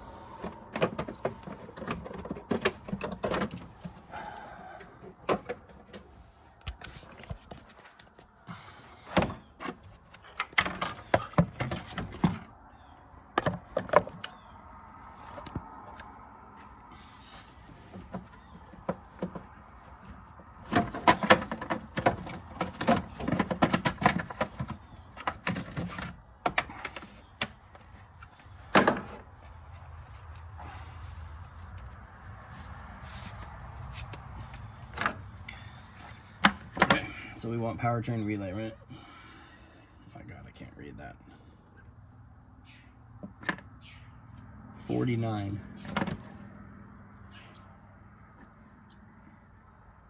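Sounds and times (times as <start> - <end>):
hands clicking and rattling fuse box: 0.3 - 8.3, 9.1 - 12.5, 17.9 - 29.3, 34.0 - 37.2.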